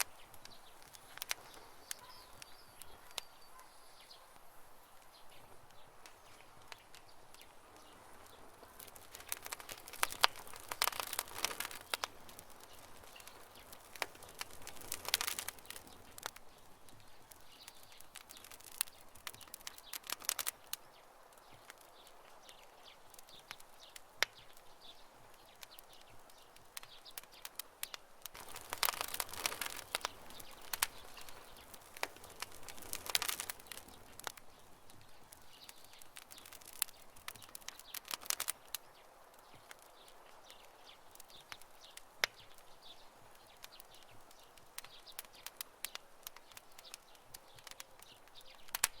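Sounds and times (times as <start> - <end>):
faint bird chirps: 0.0 - 14.0
campfire crackling and popping: 0.0 - 49.0.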